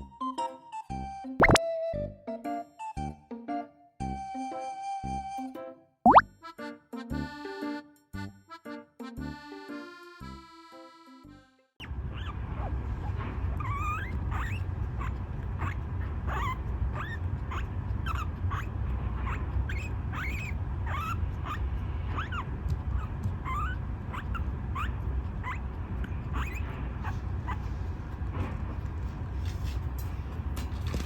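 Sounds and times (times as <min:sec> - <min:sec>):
guinea pig squealing: 0:11.8 - 0:28.2.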